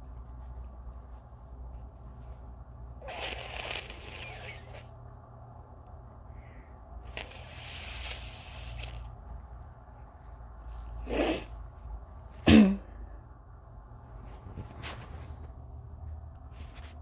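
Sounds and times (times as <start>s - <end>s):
person blowing nose: 3.0s - 4.9s, 7.1s - 9.1s, 11.0s - 11.5s.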